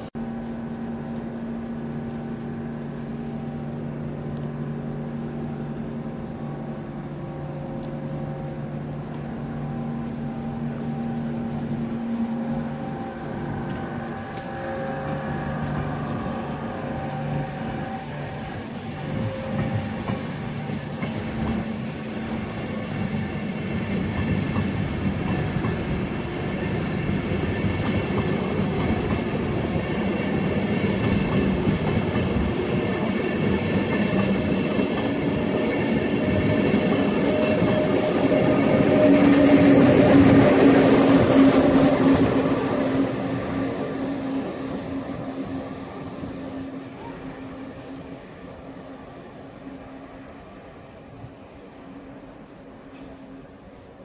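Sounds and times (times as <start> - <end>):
electric train passing: 0.0 - 54.0
wheels clickety-clack: 19.1 - 42.5.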